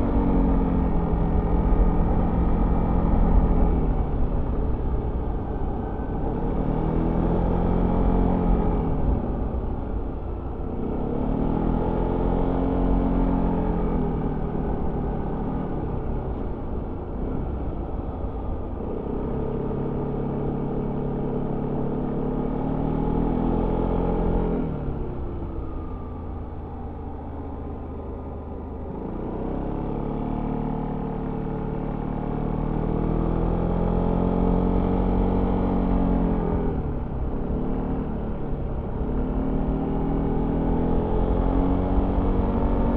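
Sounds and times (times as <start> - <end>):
low road rumble: 0.0 - 42.9.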